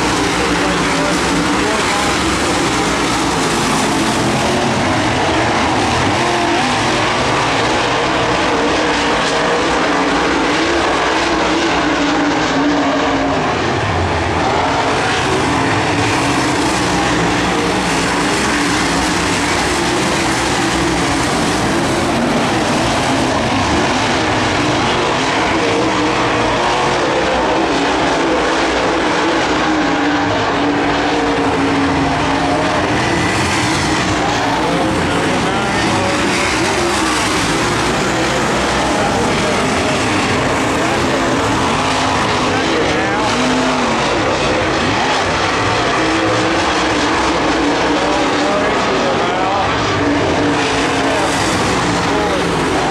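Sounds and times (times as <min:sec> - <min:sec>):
race car engines running: 0:00.0 - 0:52.9.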